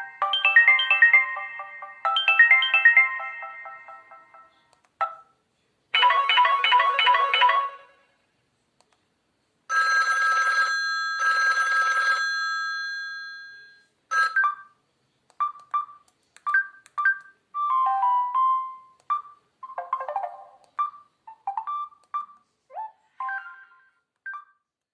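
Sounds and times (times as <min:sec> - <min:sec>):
ringtone melody: 0:00.0 - 0:05.3, 0:06.0 - 0:08.1, 0:15.8 - 0:22.4, 0:23.1 - 0:24.6.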